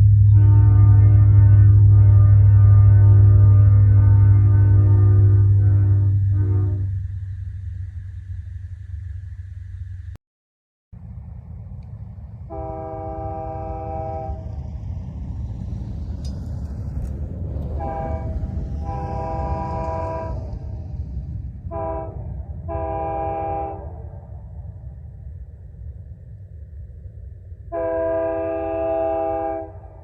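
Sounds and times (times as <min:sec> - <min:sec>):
locomotive air horn blasts: 0:00.0 - 0:07.1, 0:12.5 - 0:14.6, 0:17.7 - 0:20.9, 0:21.7 - 0:24.2, 0:27.7 - 0:30.0
steady low rumble: 0:00.0 - 0:10.2, 0:11.0 - 0:30.0.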